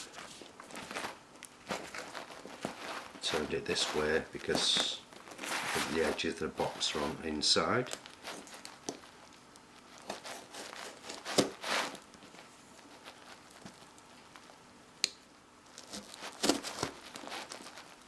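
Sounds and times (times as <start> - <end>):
cardboard box tearing and crinkling: 10.0 - 12.0, 15.8 - 18.0.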